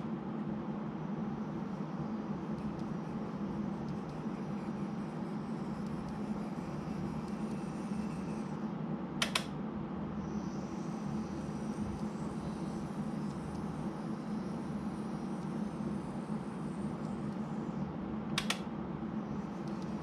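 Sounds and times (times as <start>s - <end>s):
small electric motor humming: 1.1s - 8.7s, 10.2s - 17.9s, 19.2s - 20.0s
quick clicks: 9.2s - 9.6s, 18.4s - 18.6s.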